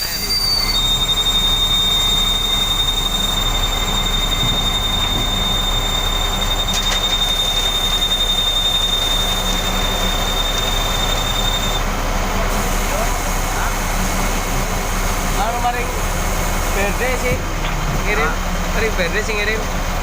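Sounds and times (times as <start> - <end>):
high-pitched whine: 0.0 - 11.9
concrete pump engine: 0.0 - 20.0.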